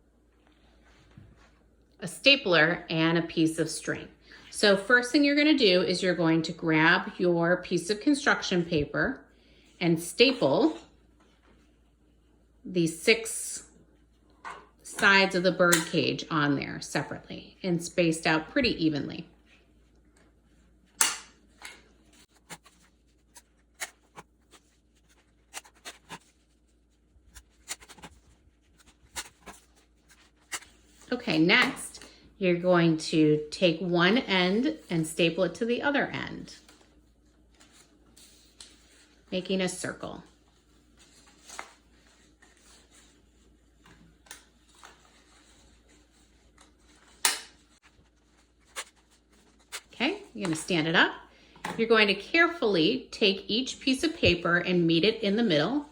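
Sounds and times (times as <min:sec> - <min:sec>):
paper being handled: 0:21.4 - 0:31.7, 0:40.2 - 0:50.6.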